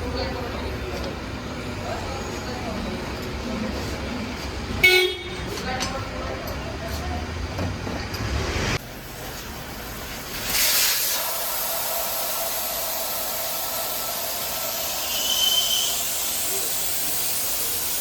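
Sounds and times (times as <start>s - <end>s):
compressed air hissing into tyre: 8.8s - 18.0s.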